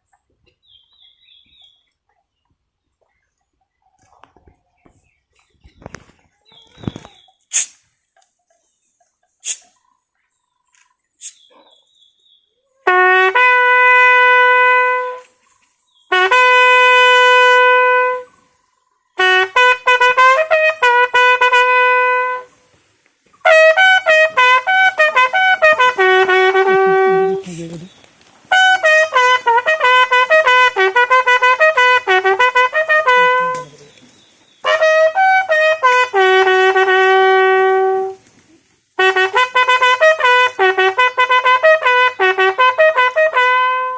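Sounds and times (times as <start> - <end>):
bugle playing military call: 12.8 - 15.4, 16.1 - 18.5, 19.2 - 22.7, 23.4 - 27.6, 28.5 - 33.9, 34.6 - 38.2, 39.0 - 43.9.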